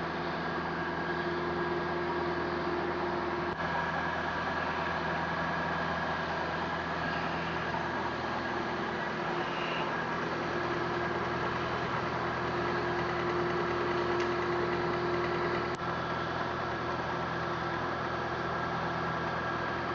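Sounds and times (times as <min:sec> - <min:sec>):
electric motor whine: 0:00.0 - 0:15.8.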